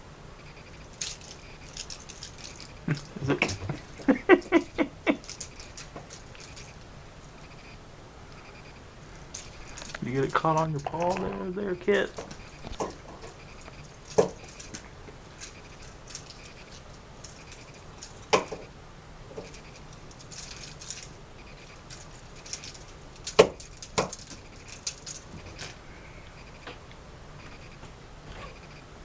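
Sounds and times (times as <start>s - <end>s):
rattle ball toy jingling: 0.5s - 6.8s, 8.4s - 18.7s, 19.4s - 25.8s.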